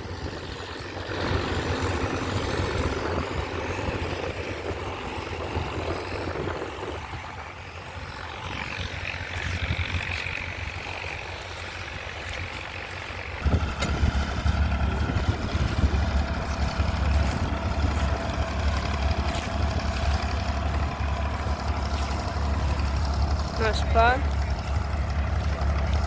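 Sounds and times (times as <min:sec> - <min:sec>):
tractor engine running: 0:00.0 - 0:26.0.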